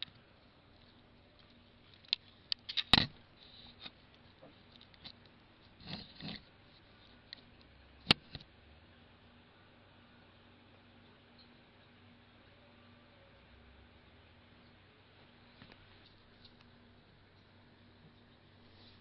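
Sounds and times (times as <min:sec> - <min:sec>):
faint steady hum: 0:00.0 - 0:19.0
soft rustle: 0:17.4 - 0:19.0.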